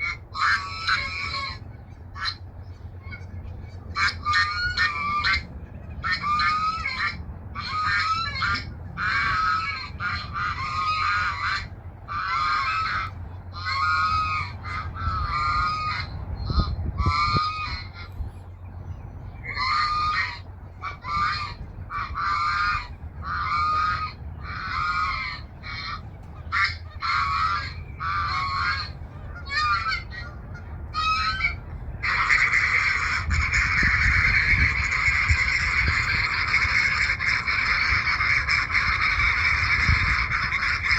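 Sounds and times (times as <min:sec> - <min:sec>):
geese honking: 0:00.0 - 0:40.9.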